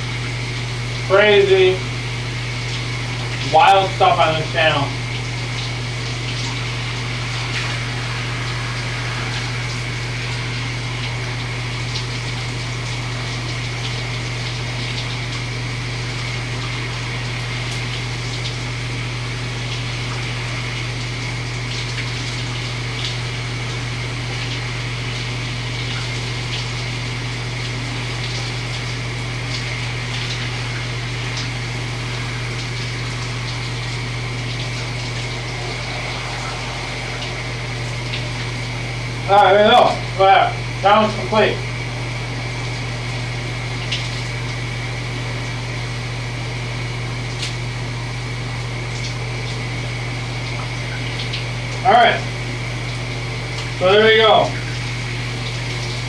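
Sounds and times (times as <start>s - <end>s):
shower water spraying: 0.0s - 56.0s
low hum: 34.6s - 41.2s.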